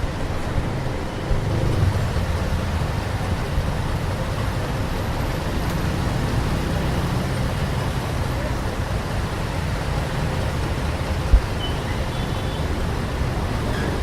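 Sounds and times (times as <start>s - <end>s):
vehicle passing close: 0.0s - 8.1s
busy street traffic: 0.0s - 14.0s.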